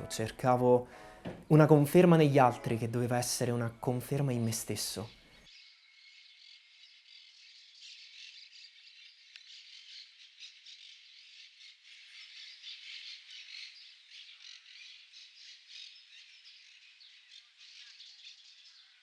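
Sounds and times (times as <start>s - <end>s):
birds chirping and calling: 4.4s - 19.0s.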